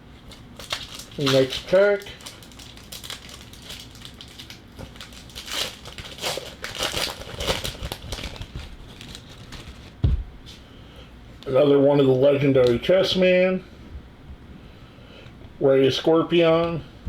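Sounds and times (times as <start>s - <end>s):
card pack wrapper crinkling: 0.2s - 10.0s.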